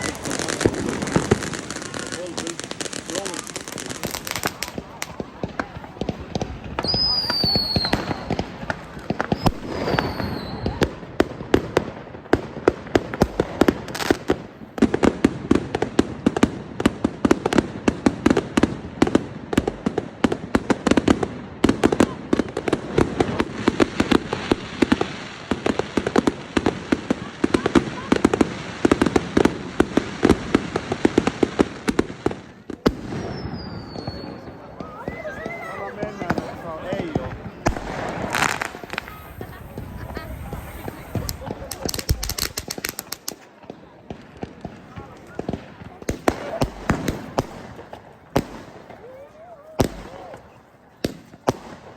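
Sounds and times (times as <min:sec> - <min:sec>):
whistling rocket: 0:00.0 - 0:11.1, 0:32.8 - 0:43.3
fireworks crackling and banging: 0:00.0 - 0:51.9.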